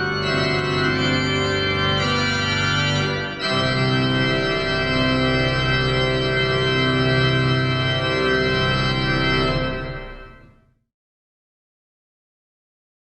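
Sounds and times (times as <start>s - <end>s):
organ playing sustained chords: 0.0s - 10.6s.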